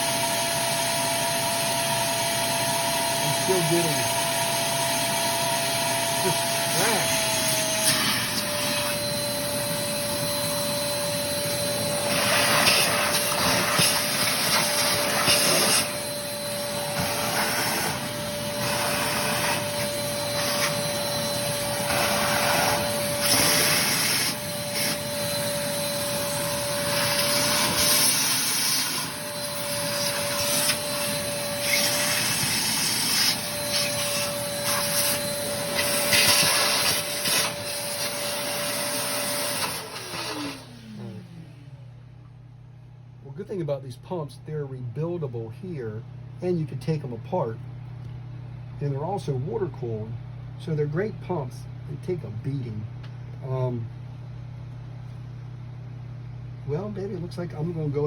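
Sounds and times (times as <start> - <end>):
electric motor high whine: 0.0 - 42.0.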